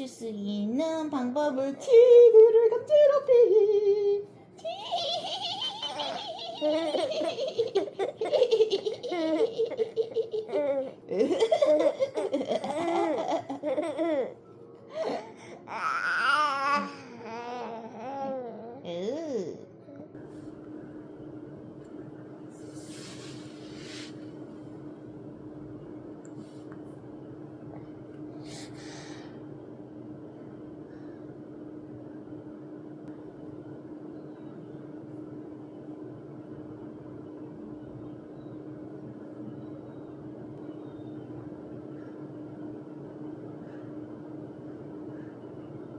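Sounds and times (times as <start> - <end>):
steady low hum: 0.0 - 45.9
baby laughing: 4.6 - 14.4.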